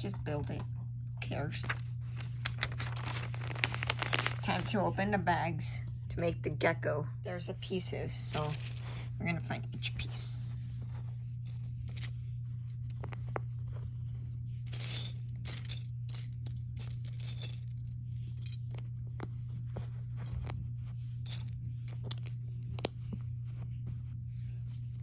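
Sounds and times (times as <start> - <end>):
steady low hum: 0.0 - 25.0
rustling: 1.6 - 4.8.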